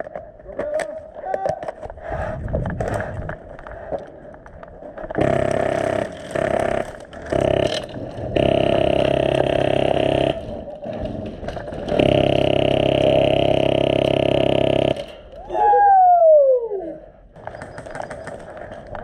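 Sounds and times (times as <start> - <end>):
airsoft gun firing full auto: 5.2 - 10.7, 11.9 - 15.3.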